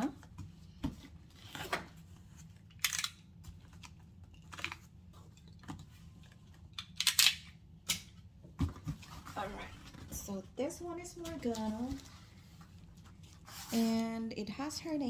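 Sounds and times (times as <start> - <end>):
packaging rustling and scraping: 0.6 - 2.8.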